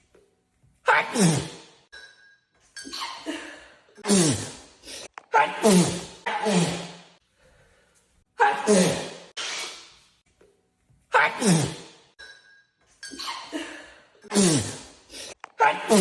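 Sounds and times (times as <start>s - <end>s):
woman sneezing: 8.4s - 9.8s.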